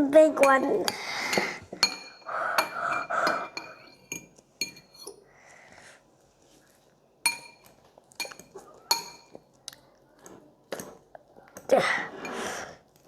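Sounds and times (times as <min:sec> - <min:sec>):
metal fork scraping a bowl: 0:00.4 - 0:05.2.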